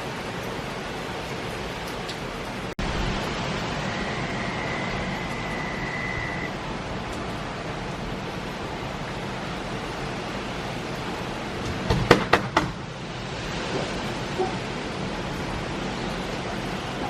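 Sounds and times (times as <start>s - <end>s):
driving rain: 0.0s - 17.0s
hurricane wind: 0.0s - 17.0s
high steady whistle: 3.7s - 6.6s.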